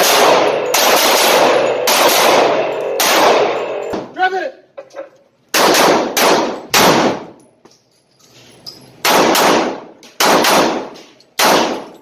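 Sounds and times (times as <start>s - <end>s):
handgun shots: 5.5s - 7.4s, 9.0s - 12.0s.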